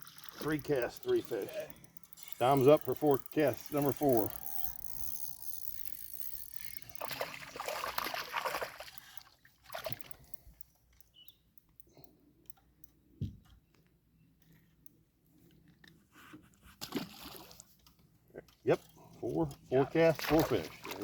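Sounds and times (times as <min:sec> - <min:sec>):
water splashing: 0:06.9 - 0:10.2, 0:20.0 - 0:21.0.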